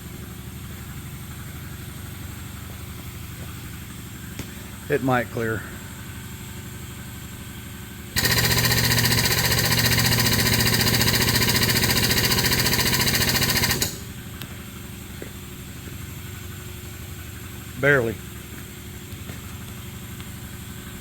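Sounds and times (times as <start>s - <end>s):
low machine hum: 0.0s - 21.0s
hydraulic pump chattering: 8.2s - 14.2s.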